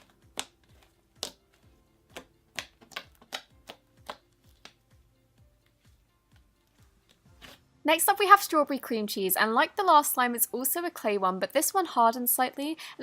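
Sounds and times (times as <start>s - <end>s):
slime squished by hand: 0.0s - 4.8s.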